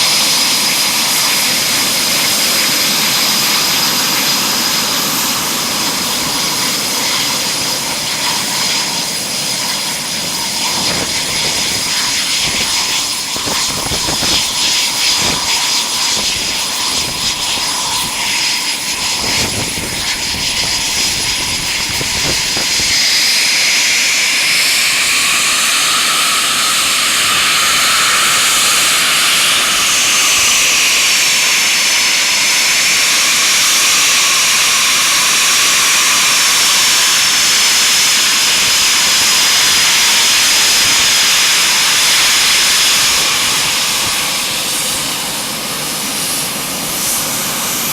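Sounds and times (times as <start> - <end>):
jet engines running: 0.0 - 47.9.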